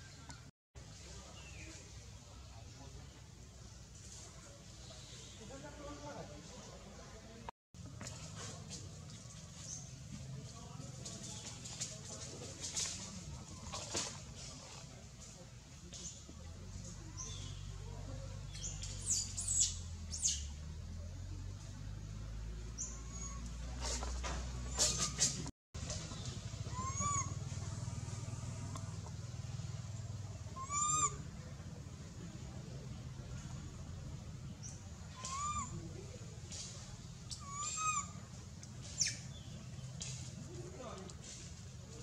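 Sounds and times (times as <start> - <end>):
baby monkey coo calls: 26.6 - 27.6, 30.4 - 31.4, 35.1 - 35.9, 37.3 - 38.3.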